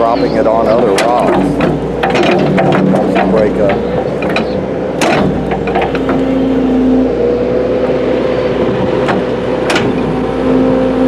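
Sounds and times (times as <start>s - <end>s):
excavator engine and hydraulics: 0.0s - 11.0s.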